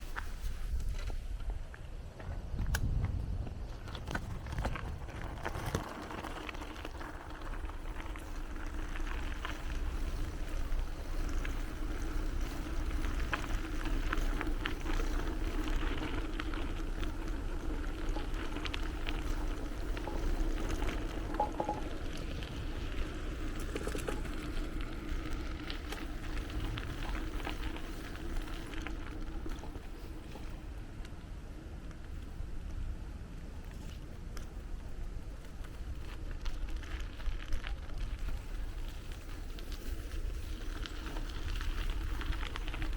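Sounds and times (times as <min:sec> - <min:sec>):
bike clicks and rattles: 0:00.0 - 0:31.3, 0:33.4 - 0:42.9
bicycle tyres rumbling: 0:00.0 - 0:42.9
constant low hum: 0:00.0 - 0:42.9
wind: 0:00.0 - 0:42.9.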